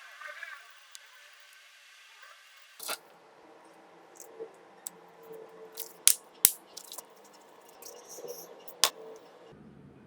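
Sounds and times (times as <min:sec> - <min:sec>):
small hard objects clicking: 0:05.8 - 0:07.1, 0:07.7 - 0:09.0.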